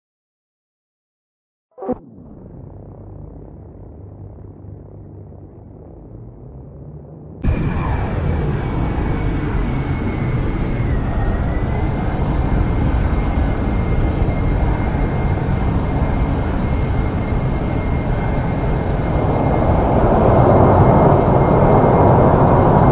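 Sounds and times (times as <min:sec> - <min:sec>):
jet engines roaring and whining: 0:07.4 - 0:22.9.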